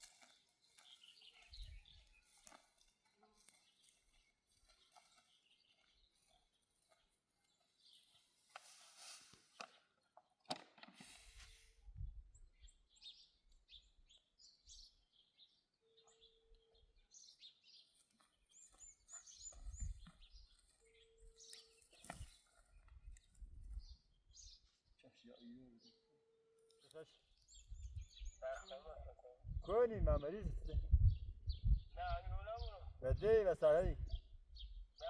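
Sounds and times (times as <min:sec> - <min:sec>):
birds chirping and trilling: 0:00.0 - 0:08.5, 0:12.2 - 0:35.0
rustling: 0:08.0 - 0:09.8
wind rumbling on microphone: 0:11.8 - 0:12.7, 0:19.5 - 0:20.4, 0:22.9 - 0:24.5, 0:27.6 - 0:35.0.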